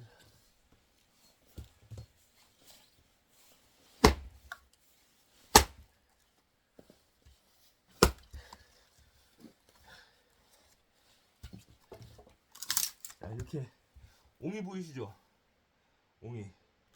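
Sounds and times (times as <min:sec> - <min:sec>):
axe blows into log: 0:04.0 - 0:04.4, 0:05.5 - 0:05.8.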